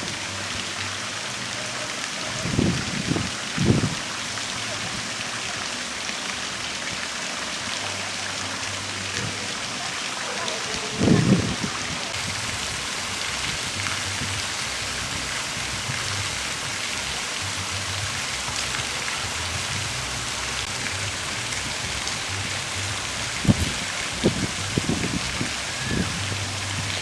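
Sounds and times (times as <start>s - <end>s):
falling water hiss: 0.0s - 27.0s
low thuds: 20.6s - 25.4s.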